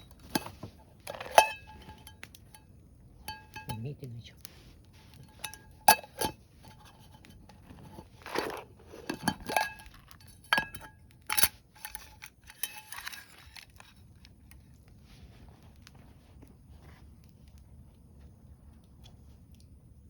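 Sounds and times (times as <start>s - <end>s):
rustling: 0.0s - 19.5s
metal cookware clinking: 1.1s - 2.6s, 3.2s - 3.9s, 5.2s - 7.1s, 8.3s - 13.4s.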